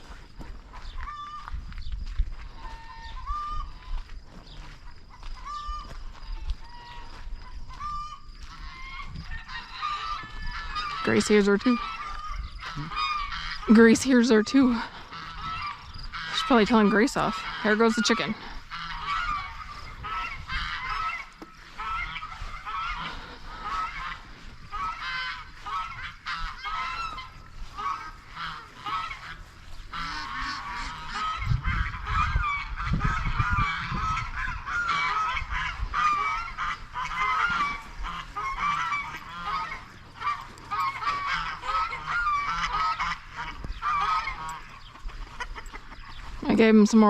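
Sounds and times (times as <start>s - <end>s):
hen squawking harshly: 7.8s - 44.8s.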